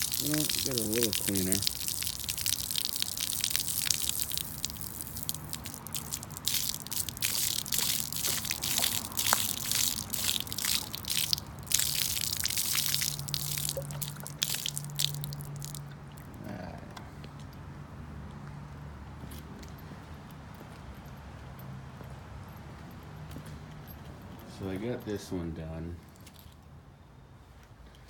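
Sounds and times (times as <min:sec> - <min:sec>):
watery spraying and suction slurping: 0:00.0 - 0:15.8.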